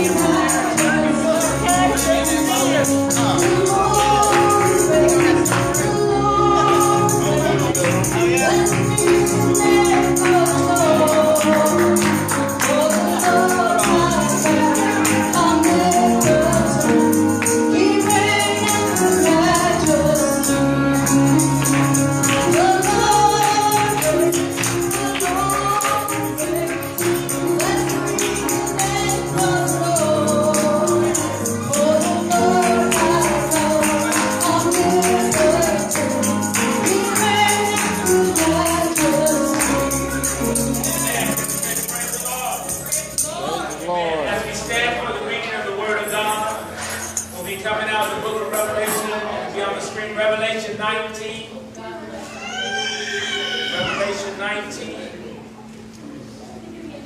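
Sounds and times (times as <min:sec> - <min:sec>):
group of voices singing: 0:00.0 - 0:41.9
tambourine shaking: 0:00.0 - 0:43.9, 0:46.0 - 0:49.1.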